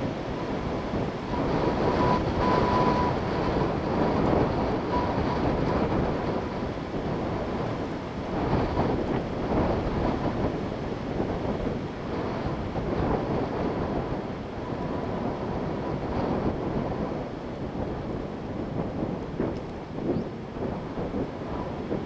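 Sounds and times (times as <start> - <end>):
strong wind through trees: 0.0 - 22.0
wind rumbling on microphone: 0.0 - 22.0
faint thin whistle-like tone: 2.0 - 3.2.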